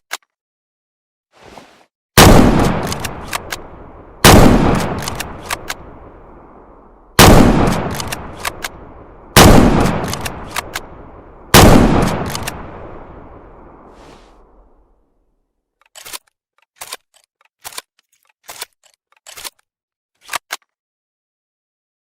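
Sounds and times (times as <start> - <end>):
rifle shots echoing: 2.2 - 14.6
rifle bolt clicks: 2.6 - 3.7, 4.3 - 5.8, 7.3 - 8.8, 9.4 - 11.0, 11.6 - 12.8, 15.8 - 19.6.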